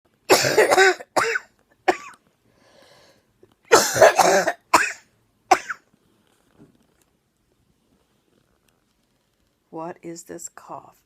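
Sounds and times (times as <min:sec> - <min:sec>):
person coughing: 0:00.3 - 0:02.1, 0:03.7 - 0:05.8
person drawing breath: 0:02.5 - 0:03.3.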